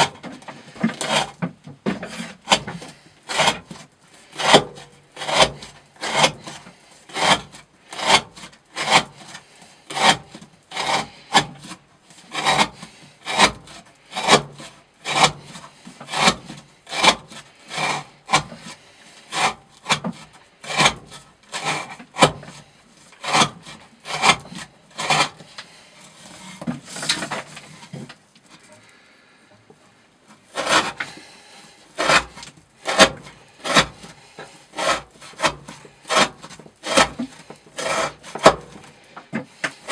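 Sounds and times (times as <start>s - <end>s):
knife cutting through rope: 0.9s - 1.4s, 2.0s - 27.9s, 30.5s - 31.2s, 31.9s - 39.0s.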